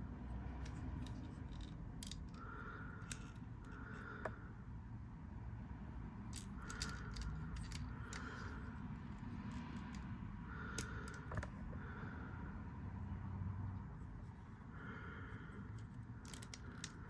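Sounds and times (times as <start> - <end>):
plastic toy parts clicking: 0.6 - 4.0, 6.3 - 8.8, 9.5 - 10.1, 10.7 - 11.5, 15.7 - 17.0
plastic parts scraping: 6.4 - 8.7, 15.8 - 17.0.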